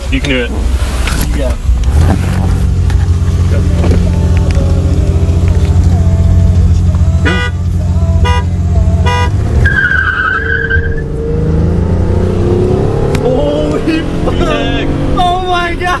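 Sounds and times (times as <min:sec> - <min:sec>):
car engines running: 0:00.0 - 0:16.0
tire squeal: 0:09.1 - 0:11.2.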